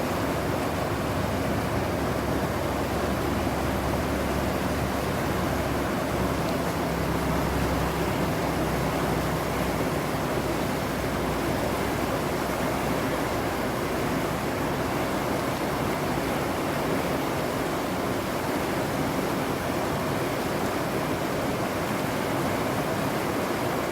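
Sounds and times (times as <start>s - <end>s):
water rushing: 0.0s - 23.9s.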